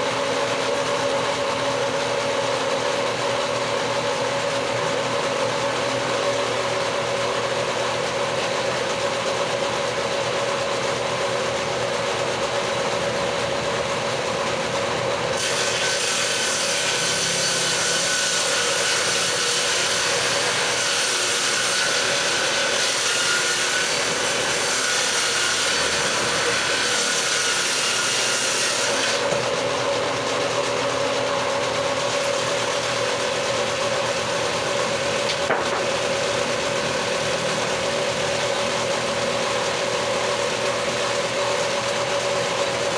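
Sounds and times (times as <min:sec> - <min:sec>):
power tool cutting wood: 0:00.0 - 0:42.9
power tool motor humming: 0:16.8 - 0:19.8.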